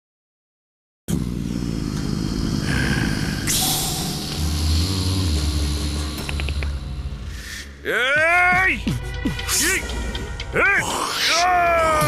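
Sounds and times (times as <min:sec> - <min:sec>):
vehicle engine rumbling: 0:01.1 - 0:07.8
loud hiss: 0:02.4 - 0:06.2.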